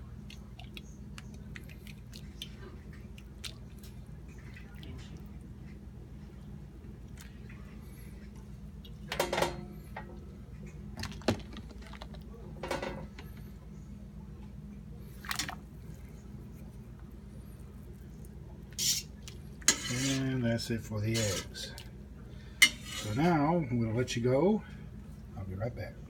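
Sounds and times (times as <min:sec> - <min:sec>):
steady low hum: 0:00.0 - 0:26.0
kitchen utensils clattering: 0:22.6 - 0:23.3.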